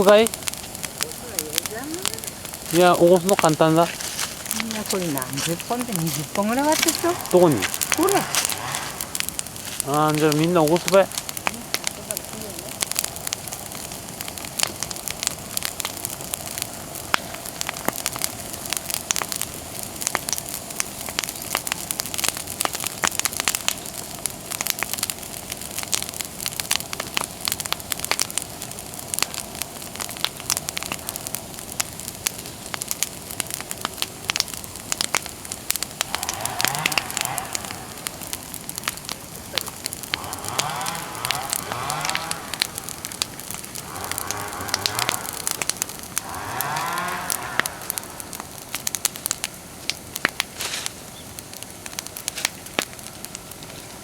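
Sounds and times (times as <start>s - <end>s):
faint voices: 0.0s - 13.0s
bonfire crackling and popping: 0.0s - 54.0s.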